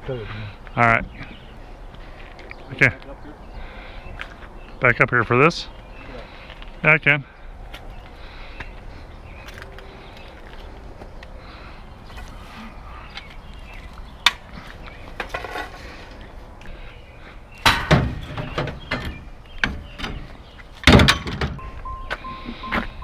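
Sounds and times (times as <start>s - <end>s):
short ringing tone: 21.6s - 23.0s.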